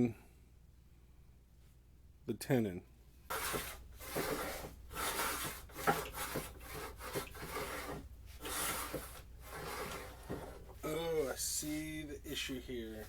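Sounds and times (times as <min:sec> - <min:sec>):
plane shaving wood: 0:03.3 - 0:10.7.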